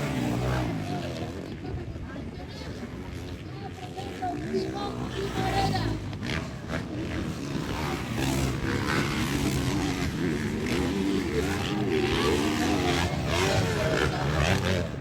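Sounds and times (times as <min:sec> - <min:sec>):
motocross bike engines racing: 0:00.0 - 0:15.0.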